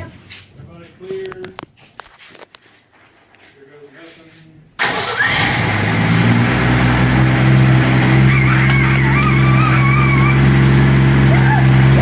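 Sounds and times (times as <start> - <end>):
engine humming steadily: 4.8 - 12.0.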